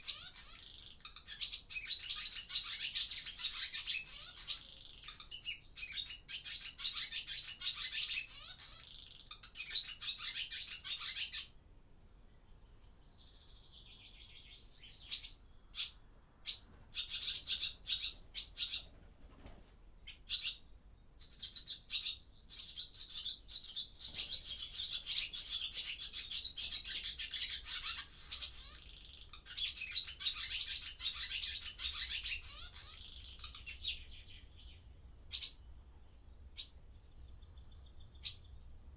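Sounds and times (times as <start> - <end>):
swallows twittering: 0.0 - 11.5, 21.2 - 38.9.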